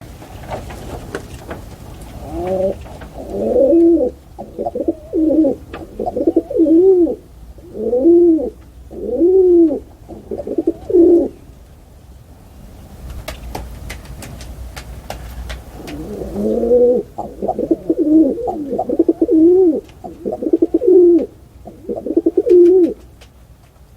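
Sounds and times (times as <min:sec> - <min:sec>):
pigeon cooing: 0:02.0 - 0:11.4, 0:15.6 - 0:23.1.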